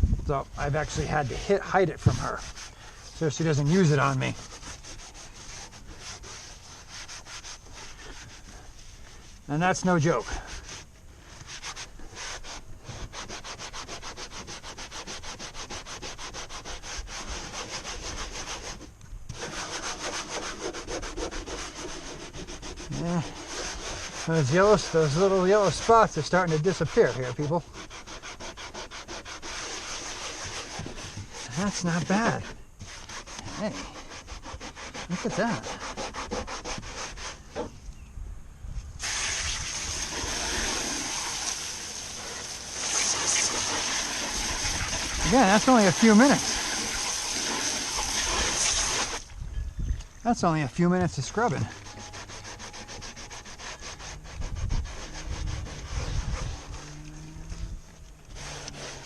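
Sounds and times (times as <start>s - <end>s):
scrubbing strokes on kayak hull: 0.4s - 37.8s, 39.0s - 49.3s, 50.1s - 59.0s
water spraying: 39.0s - 49.3s.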